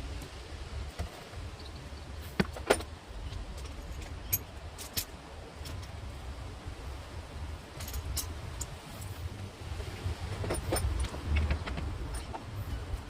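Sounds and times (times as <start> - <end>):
low steady rumble: 0.0 - 13.0.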